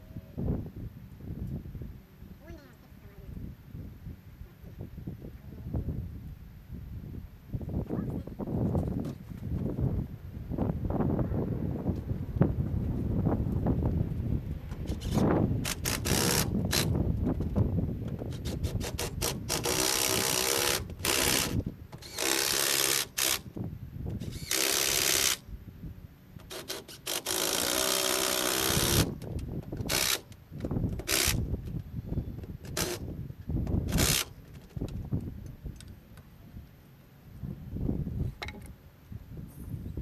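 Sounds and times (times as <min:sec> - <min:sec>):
power tool running: 0:14.9 - 0:16.9, 0:18.3 - 0:23.5, 0:24.2 - 0:25.4, 0:26.4 - 0:29.2, 0:29.8 - 0:30.3, 0:30.9 - 0:31.4, 0:32.6 - 0:33.0, 0:33.9 - 0:34.3.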